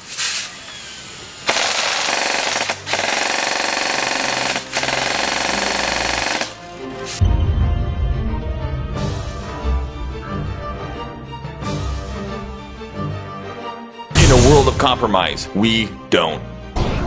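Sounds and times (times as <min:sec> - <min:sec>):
airsoft gun firing full-auto: 0:01.4 - 0:06.6.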